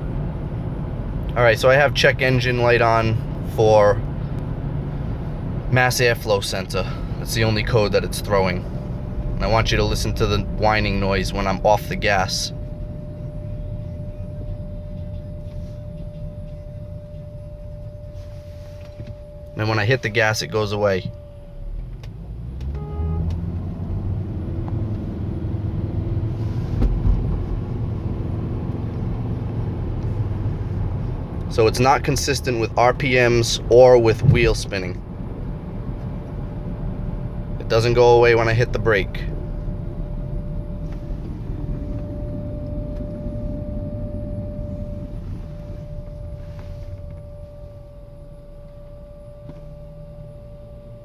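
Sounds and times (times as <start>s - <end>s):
car engine and road rumble: 0.0s - 51.0s
short pitched tone: 22.7s - 23.3s, 38.0s - 50.9s.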